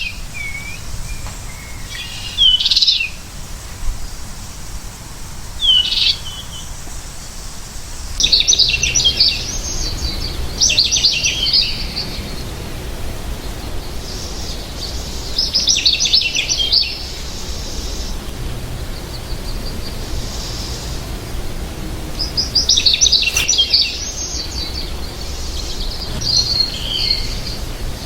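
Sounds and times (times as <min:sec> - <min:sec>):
bird call: 0:00.0 - 0:03.3, 0:05.6 - 0:07.4, 0:22.1 - 0:27.8
bird twittering song: 0:00.0 - 0:04.3, 0:05.6 - 0:12.6, 0:13.3 - 0:28.0
steady low rumble: 0:07.9 - 0:28.0.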